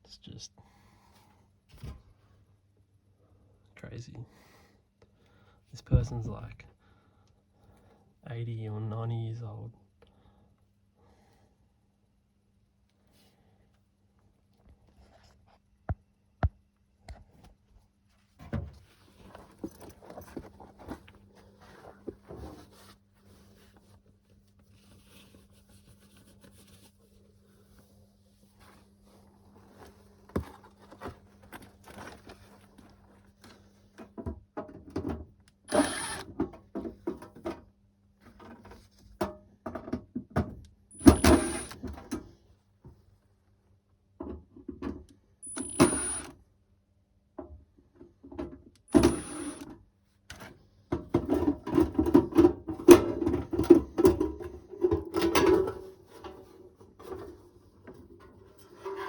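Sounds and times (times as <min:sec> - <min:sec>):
clatter of tools and parts: 0:19.2 - 0:22.6, 0:41.0 - 0:42.3, 0:48.3 - 0:59.0.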